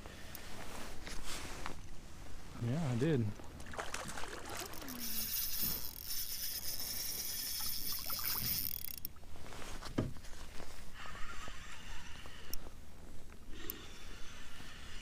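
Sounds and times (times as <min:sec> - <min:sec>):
water splashing and trickling: 0:03.0 - 0:09.2.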